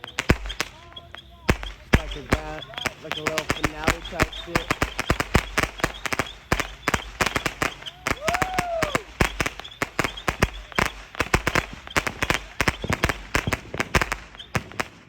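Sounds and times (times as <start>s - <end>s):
firework cracks and pops: 0.0s - 15.0s
firework whistle: 0.0s - 15.0s.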